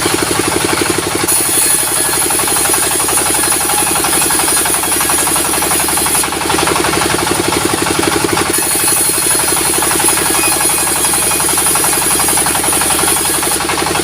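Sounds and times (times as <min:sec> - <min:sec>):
diesel engine pulsing: 0:00.0 - 0:14.0
saw hissing: 0:01.3 - 0:06.4, 0:08.5 - 0:14.0.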